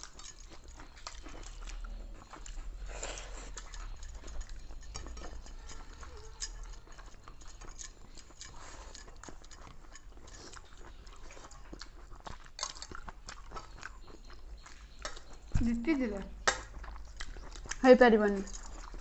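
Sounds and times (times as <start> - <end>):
wet chewing: 0.0 - 19.0
lip-smacking: 16.2 - 17.8.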